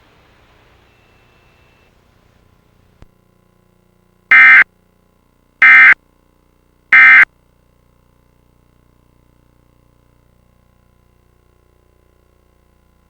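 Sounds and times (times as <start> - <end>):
digital data tone bursts: 4.3 - 4.6, 5.6 - 6.0, 7.0 - 7.2.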